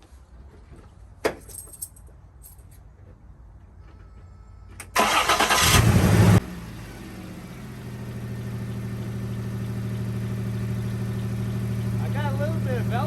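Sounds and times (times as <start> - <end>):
engine cranking and idling: 4.9 - 13.0
exhaust leak: 8.1 - 13.0.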